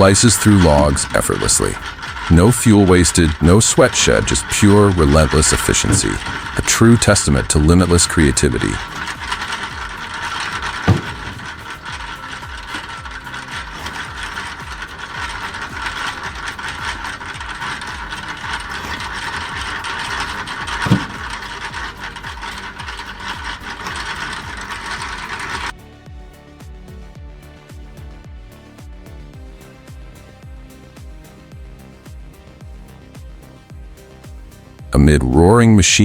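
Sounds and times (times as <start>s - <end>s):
wood splitter clattering: 0.0s - 25.7s
sharp knocks: 8.8s - 25.7s.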